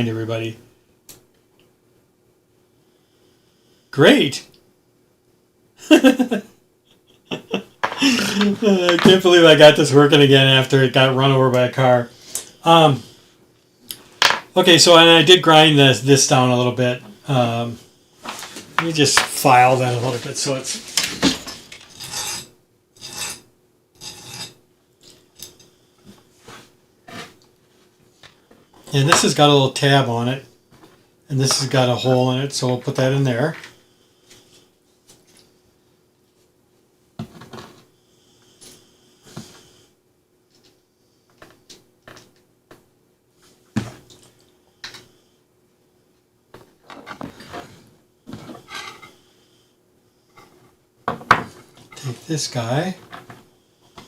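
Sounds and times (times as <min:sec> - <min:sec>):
clattering parts: 0:20.7 - 0:23.4
hand file rasping: 0:21.9 - 0:23.4, 0:24.0 - 0:24.6.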